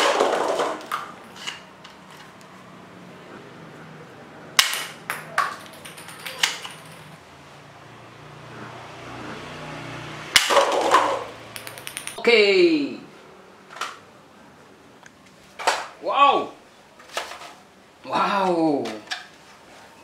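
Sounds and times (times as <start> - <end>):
toy guns clattering: 4.6 - 7.2, 10.4 - 12.2.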